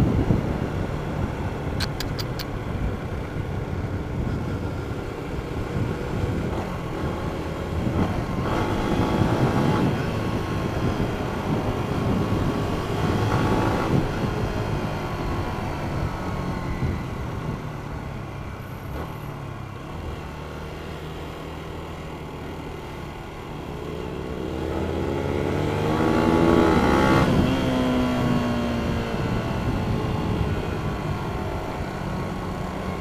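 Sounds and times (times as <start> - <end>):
quick clicks: 1.8 - 2.5
motorcycle engine revving: 5.3 - 17.0, 23.6 - 33.0.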